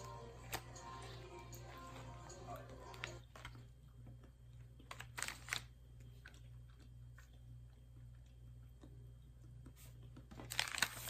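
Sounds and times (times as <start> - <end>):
person chewing and crunching: 2.9 - 10.6.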